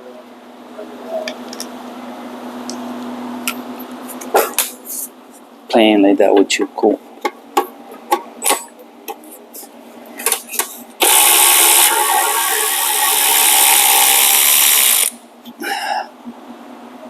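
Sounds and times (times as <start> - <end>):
power tool driving bolt: 11.0 - 15.2.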